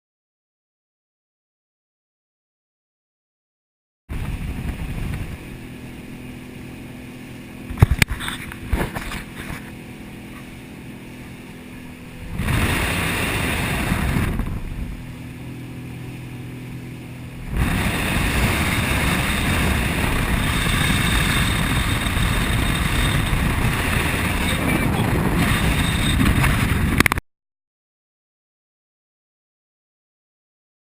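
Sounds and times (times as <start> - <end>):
outboard engine humming: 4.1 - 27.2
rush of wind and water: 4.1 - 27.2.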